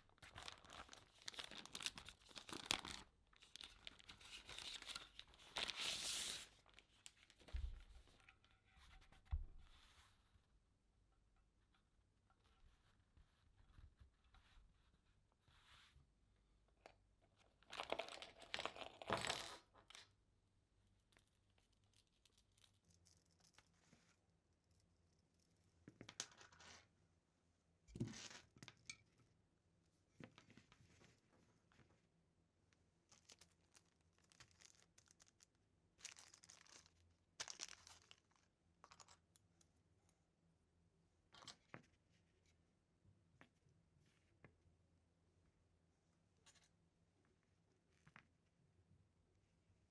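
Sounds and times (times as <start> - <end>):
packaging rustles and scrapes: 0.3 - 6.8.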